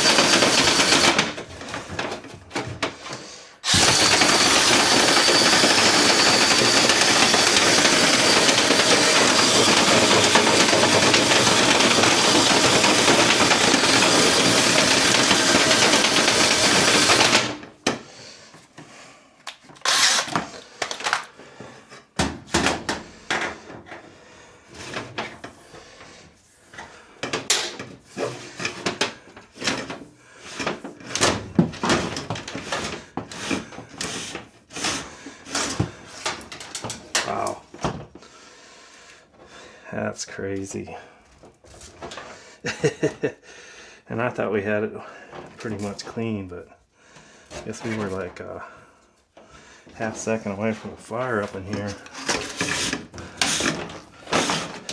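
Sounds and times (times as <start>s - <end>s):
power drill spinning brush: 0.0s - 1.3s, 3.6s - 17.6s, 19.8s - 21.2s, 50.0s - 54.9s.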